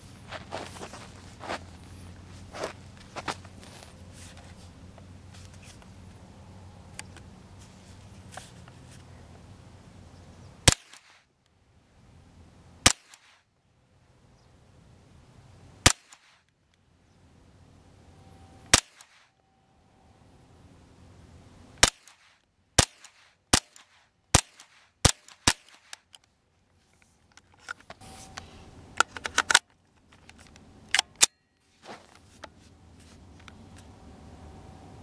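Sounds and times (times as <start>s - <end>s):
rifle shots cracking: 10.6s - 11.2s, 18.7s - 19.3s, 21.8s - 26.0s.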